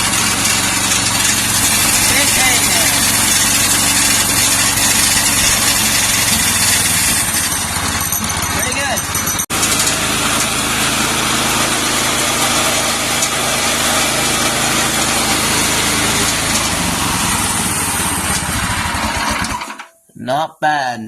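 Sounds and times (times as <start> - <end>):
lawnmower engine running: 0.0 - 19.9.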